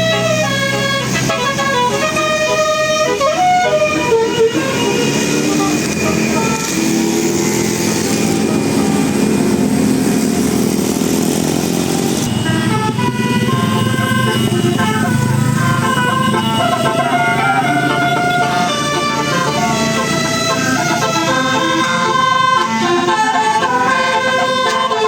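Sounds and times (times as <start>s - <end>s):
bus engine pulling under load: 0.0s - 25.0s
musical horn playing a tune: 0.0s - 25.0s.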